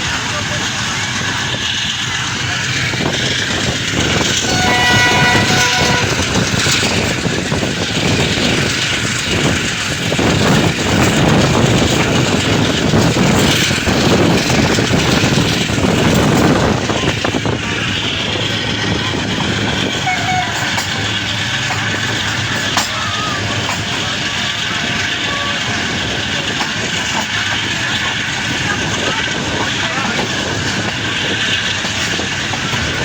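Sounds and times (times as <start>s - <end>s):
train wheels clattering on rails: 0.0s - 33.0s
train horn: 4.3s - 6.4s, 20.0s - 21.0s, 25.1s - 26.0s.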